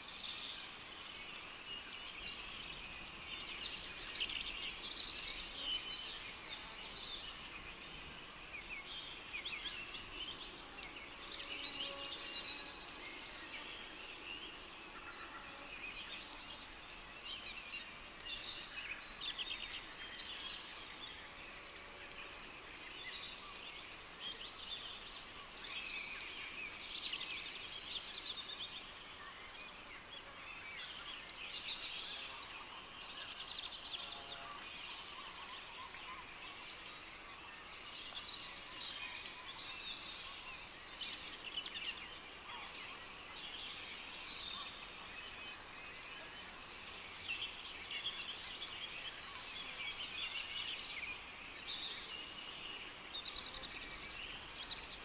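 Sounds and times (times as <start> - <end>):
cricket chirping: 31.2 - 55.0.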